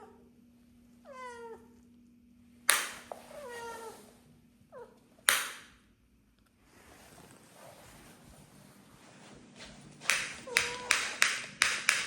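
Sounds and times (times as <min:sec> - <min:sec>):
sharp knocks: 0:05.3 - 0:05.7, 0:10.1 - 0:12.0.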